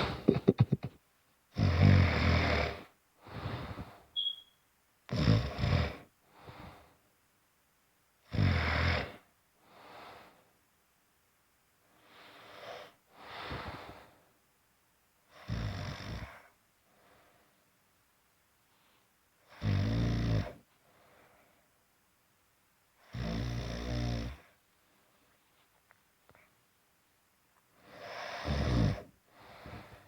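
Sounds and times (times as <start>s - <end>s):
person snoring: 1.6s - 3.8s, 8.3s - 9.2s, 27.9s - 29.9s
soft breaths: 2.5s - 4.3s, 5.9s - 7.2s, 9.1s - 10.7s, 11.8s - 14.5s, 16.2s - 17.9s, 18.5s - 19.5s, 20.4s - 21.8s, 24.3s - 26.7s, 27.6s - 30.0s.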